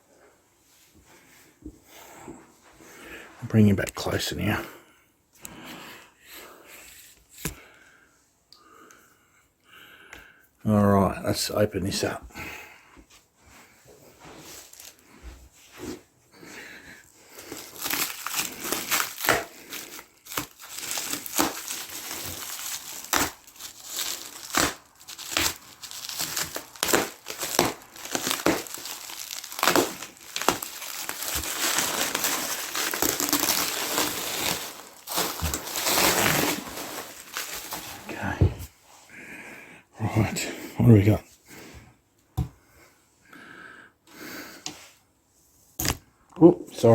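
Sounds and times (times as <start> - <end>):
packaging crinkling and crackling: 14.5 - 15.1, 17.1 - 38.4.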